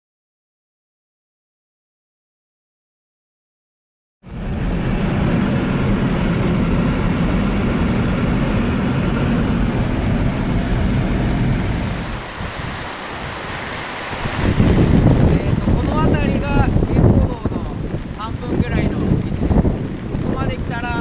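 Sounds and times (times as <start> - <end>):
road noise: 4.2 - 21.0
tyres on melody road humming tune: 4.3 - 12.2.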